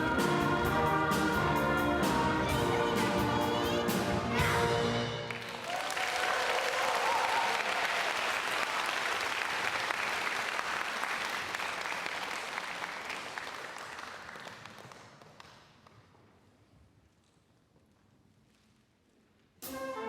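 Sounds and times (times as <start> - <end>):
audience applauding: 5.1 - 15.8.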